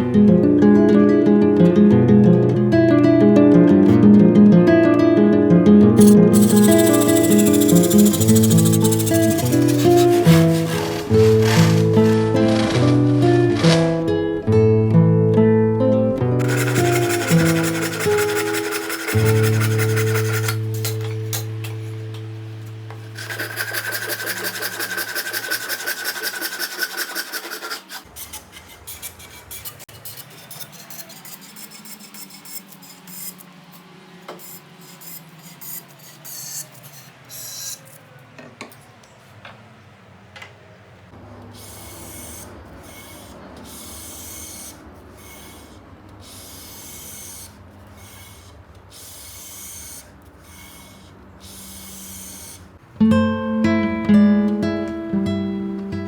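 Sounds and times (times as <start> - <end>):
hand tool scraping wood: 6.0 - 14.3, 16.4 - 21.7, 22.9 - 33.6, 34.3 - 37.9, 41.6 - 52.6.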